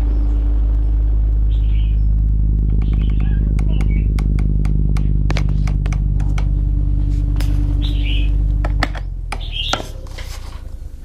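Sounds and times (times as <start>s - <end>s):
myna bird calls: 0.0s - 4.3s, 7.6s - 10.0s
low motor-like hum: 0.0s - 11.0s
sharp clicks: 0.6s - 6.6s.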